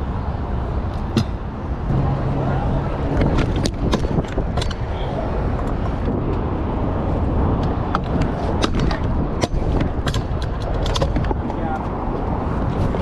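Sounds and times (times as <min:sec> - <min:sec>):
low rumble: 0:00.0 - 0:10.1
scooters rolling on concrete: 0:00.9 - 0:13.0
scooter decks clacking on ground: 0:03.1 - 0:06.4, 0:07.6 - 0:13.0.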